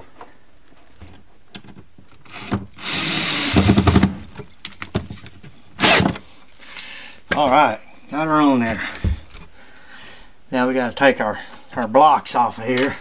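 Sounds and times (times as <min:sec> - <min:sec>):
power drill driving a screw: 0:02.3 - 0:04.2, 0:05.8 - 0:06.2.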